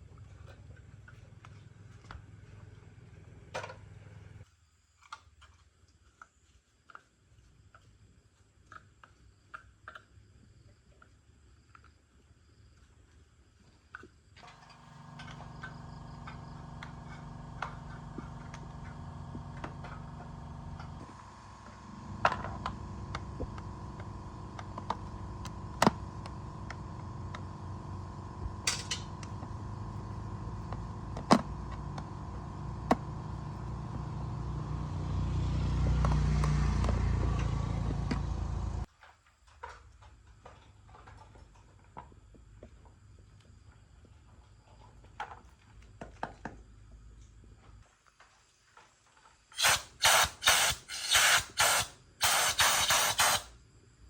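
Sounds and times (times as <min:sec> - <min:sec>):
motor running: 0:14.4 - 0:38.9, 0:49.6 - 0:53.5
sharp metallic clicks: 0:49.6 - 0:53.5.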